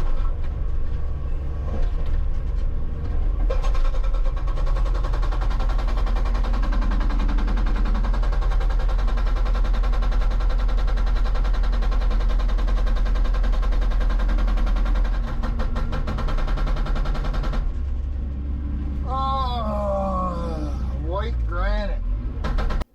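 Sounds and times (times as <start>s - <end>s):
diesel engine under load: 0.0s - 22.9s
hydraulic breaker pounding rock: 3.1s - 17.9s, 22.4s - 22.9s.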